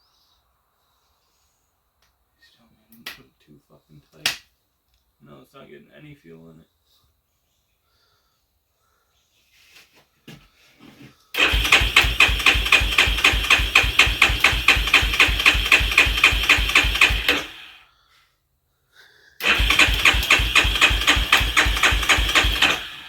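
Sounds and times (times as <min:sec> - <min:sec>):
engine cranking without starting: 0:11.4 - 0:17.8, 0:19.4 - 0:23.0.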